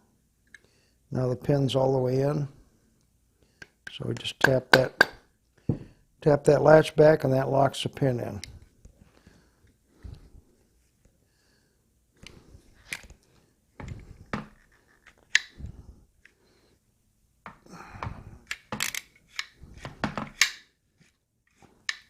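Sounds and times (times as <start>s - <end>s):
gun parts clicking and scraping: 12.2s - 15.6s, 18.4s - 22.0s.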